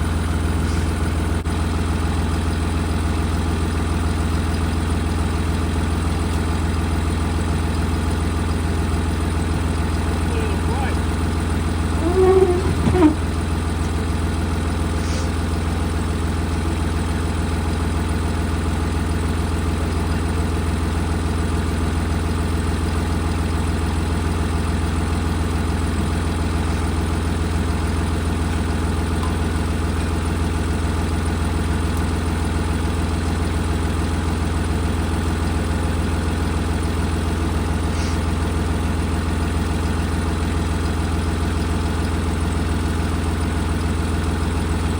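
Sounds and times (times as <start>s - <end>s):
tractor engine idling: 0.0s - 44.9s
short wavering squeak: 11.9s - 13.4s.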